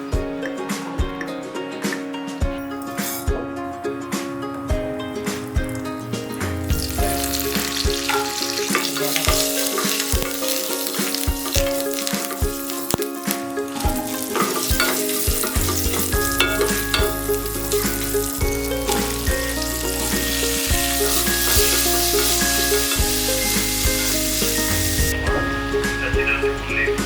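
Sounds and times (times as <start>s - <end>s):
food sizzling in hot oil: 2.9s - 3.2s, 6.7s - 25.9s.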